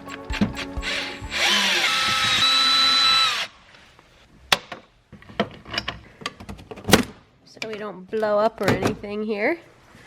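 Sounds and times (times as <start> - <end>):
power drill whining: 0.0 - 3.6.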